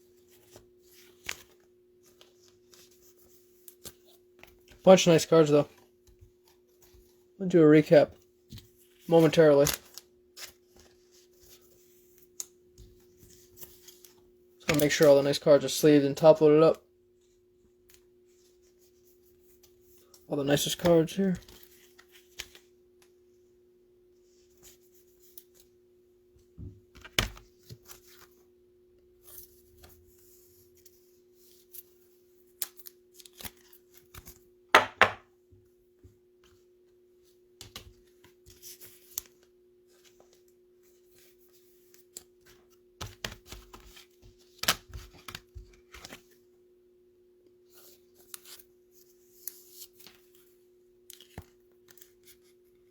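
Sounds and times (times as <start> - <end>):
cards rustling and sliding: 0.1 - 7.3, 8.5 - 15.4, 17.9 - 23.0, 27.0 - 28.5, 37.6 - 46.4, 47.7 - 50.5, 51.1 - 52.9.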